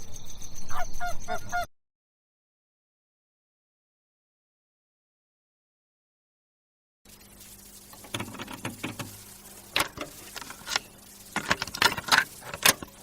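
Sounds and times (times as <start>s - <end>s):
sharp clicks and knocks: 8.0s - 13.0s.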